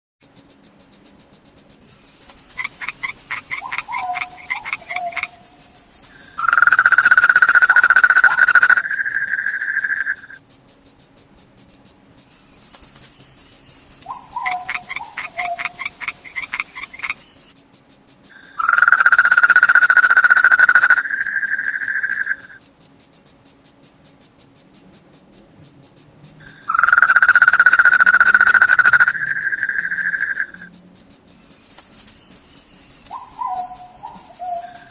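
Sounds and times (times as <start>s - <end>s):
crickets chirping: 0.2s - 34.9s
insect buzzing call: 2.0s - 10.4s, 12.3s - 17.6s, 18.4s - 22.6s, 26.4s - 30.7s, 31.3s - 34.9s.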